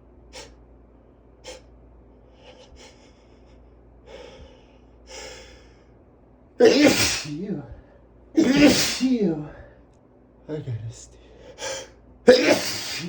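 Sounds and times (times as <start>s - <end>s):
man gasping breaths: 2.2s - 6.0s, 11.2s - 12.0s.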